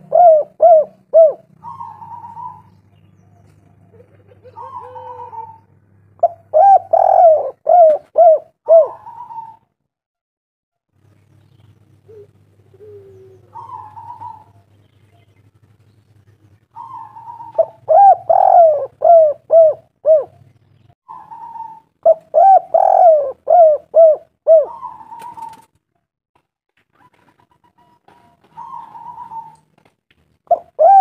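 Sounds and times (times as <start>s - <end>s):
dove cooing: 0.0s - 9.6s, 12.0s - 14.7s, 16.7s - 20.5s, 21.1s - 25.7s, 27.0s - 29.8s, 30.5s - 31.0s.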